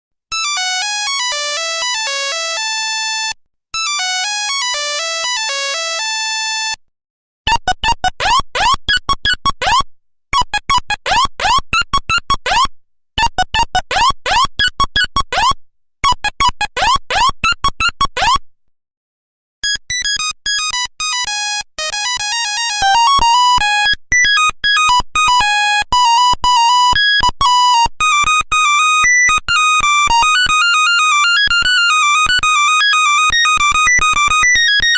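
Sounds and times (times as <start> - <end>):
monophonic ringtone melodies: 19.6 - 27.6.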